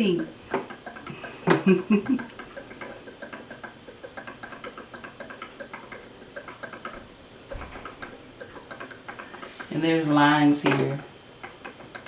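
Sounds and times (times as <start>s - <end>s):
ink bottle bubbling ticks: 2.1s - 7.1s.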